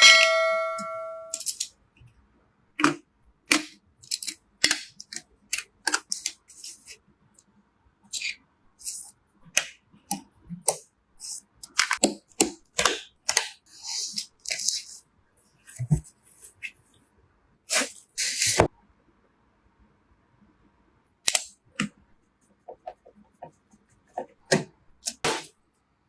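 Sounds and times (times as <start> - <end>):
computer parts clicking and snapping: 1.3 - 1.7.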